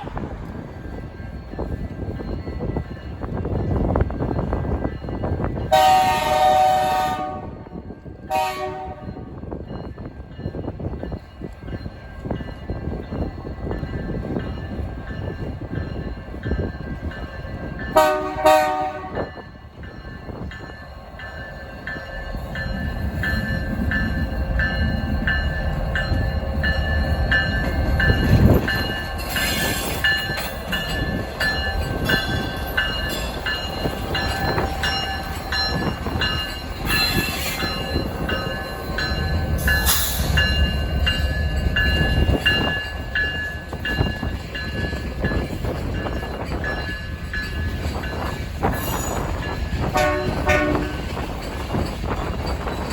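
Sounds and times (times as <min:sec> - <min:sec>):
train rumbling past: 0:00.0 - 0:52.9
train horn blasts: 0:05.7 - 0:09.3, 0:17.9 - 0:19.4, 0:49.9 - 0:51.1.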